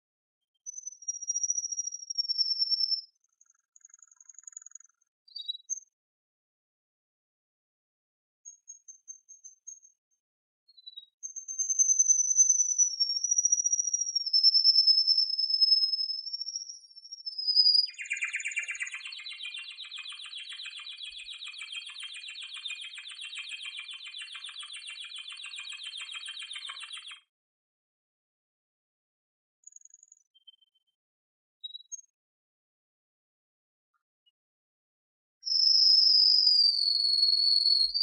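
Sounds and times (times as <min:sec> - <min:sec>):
canary singing: 0:12.6 - 0:27.2, 0:35.4 - 0:38.0.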